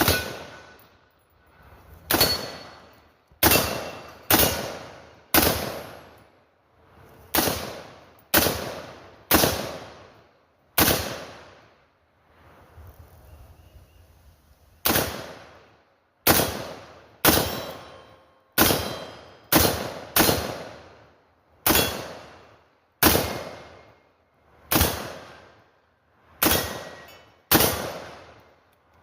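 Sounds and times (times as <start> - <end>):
rifle shot echoing: 3.4 - 6.0, 7.3 - 10.0, 10.8 - 11.6, 14.8 - 15.5, 16.3 - 17.9, 18.6 - 20.8, 24.7 - 25.5, 27.5 - 28.3.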